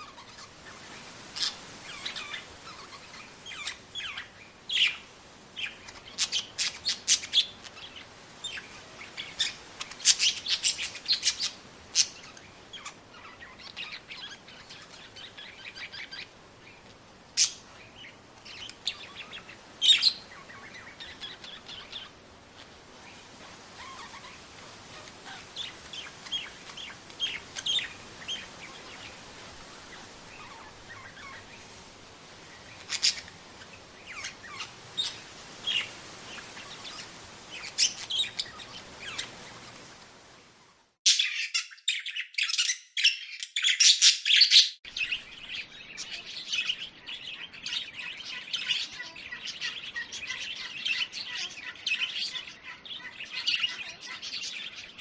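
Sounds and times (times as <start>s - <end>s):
budgerigars chirping: 41.1s - 55.0s.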